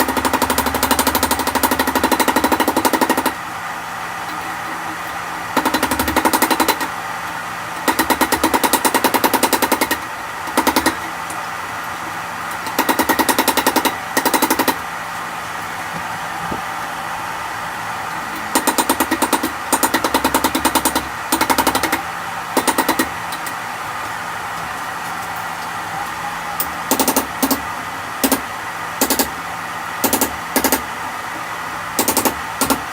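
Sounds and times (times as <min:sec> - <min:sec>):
power tool rattling on metal: 0:00.0 - 0:03.4, 0:04.3 - 0:11.3, 0:12.6 - 0:14.8, 0:18.3 - 0:22.0, 0:22.6 - 0:23.6
steady hum: 0:00.0 - 0:32.9.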